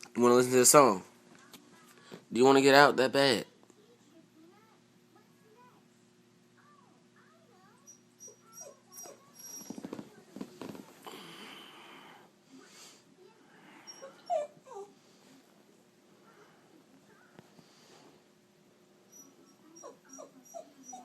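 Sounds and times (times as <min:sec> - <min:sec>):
dog whining: 0:07.8 - 0:10.0, 0:13.8 - 0:15.0, 0:19.1 - 0:21.0.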